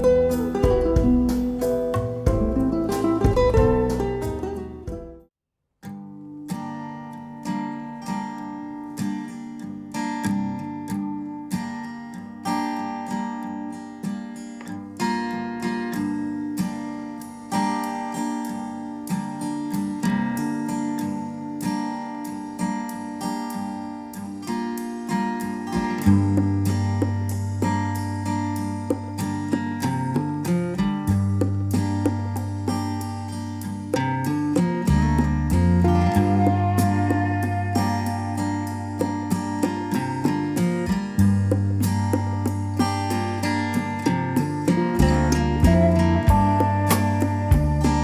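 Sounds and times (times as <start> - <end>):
acoustic guitar music: 0.0 - 48.0
deep held bass note: 45.6 - 48.0.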